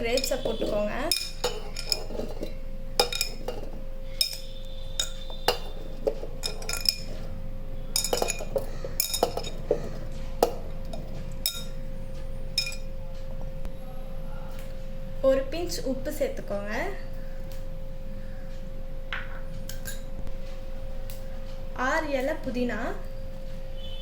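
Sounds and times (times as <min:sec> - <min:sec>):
grapes clinking in a jar: 0:00.0 - 0:11.8, 0:12.6 - 0:12.9
steady hum: 0:00.0 - 0:24.0.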